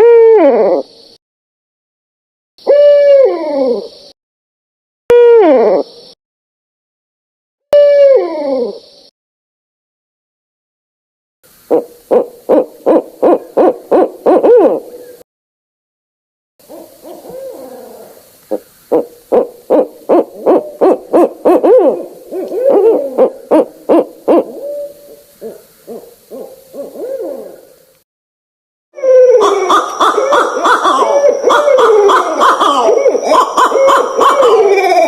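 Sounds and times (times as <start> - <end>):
owls hooting rapidly: 2.6 - 4.0, 11.7 - 15.2, 16.6 - 27.8, 29.0 - 35.0.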